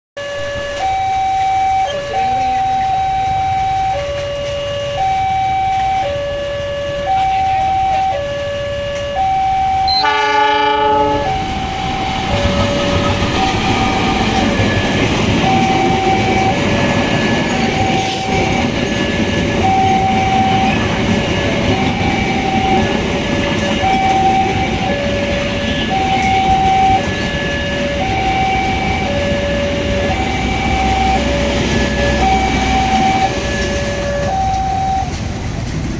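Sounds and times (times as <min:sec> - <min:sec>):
level crossing alarm two tones: 0:00.2 - 0:35.2
train wheels rumbling on rails: 0:00.3 - 0:35.9
train horn: 0:04.0 - 0:14.4, 0:23.5 - 0:30.2.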